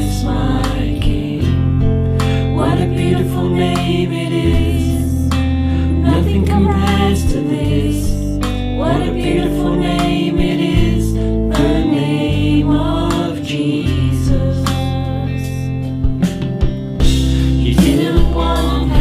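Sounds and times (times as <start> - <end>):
guitar: 0.0 - 19.0
low bass notes: 0.0 - 19.0
person singing: 5.9 - 15.7, 17.4 - 19.0.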